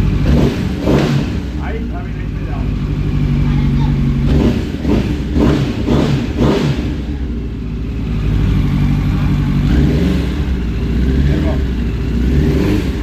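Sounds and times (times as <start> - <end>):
motorcycle engine idling: 0.0 - 13.0.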